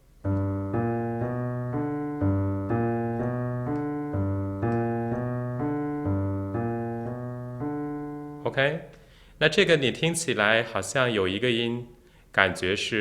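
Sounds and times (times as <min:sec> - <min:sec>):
piano blues walking bass: 0:00.0 - 0:08.5.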